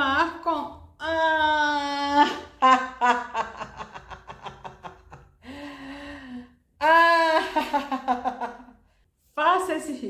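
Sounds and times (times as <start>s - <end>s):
woman laughing: 1.4s - 5.8s, 6.8s - 8.7s.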